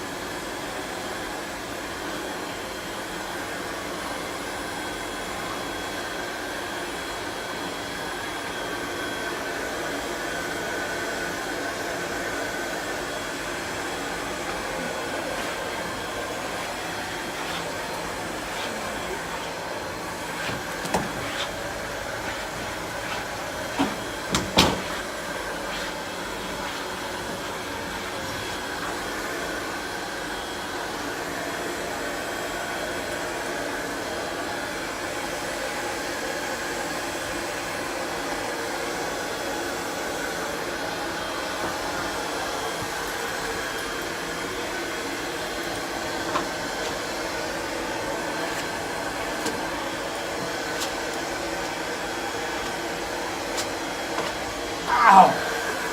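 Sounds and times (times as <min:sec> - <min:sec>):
heat gun blowing: 0:12.4 - 0:28.8.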